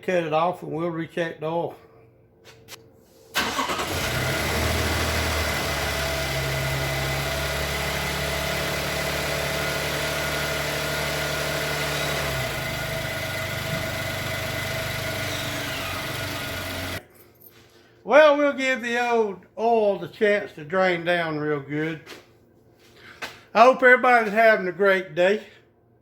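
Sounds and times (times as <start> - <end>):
truck engine idling: 3.4 - 17.0.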